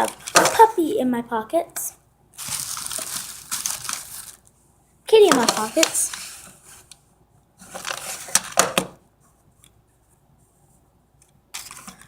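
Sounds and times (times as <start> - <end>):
toy packages rustling: 2.4 - 4.5, 5.1 - 7.0, 7.6 - 8.6.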